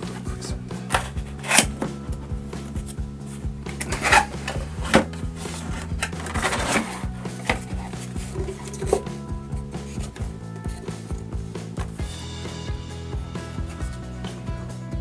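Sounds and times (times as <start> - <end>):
background music: 0.0 - 15.0
packaging being handled: 2.7 - 12.0.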